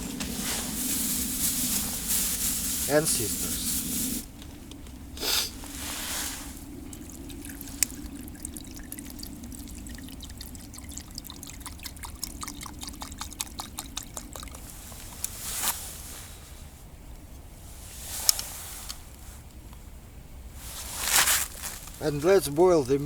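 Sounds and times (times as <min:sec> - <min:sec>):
handling rustle: 0:00.0 - 0:08.2, 0:20.6 - 0:23.0
water pouring into a pot: 0:05.7 - 0:15.3.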